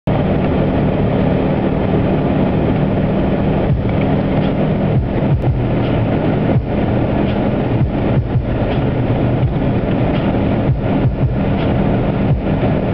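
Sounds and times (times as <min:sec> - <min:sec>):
car engine hum: 0:00.0 - 0:12.9
tyre and wind noise: 0:00.1 - 0:12.9.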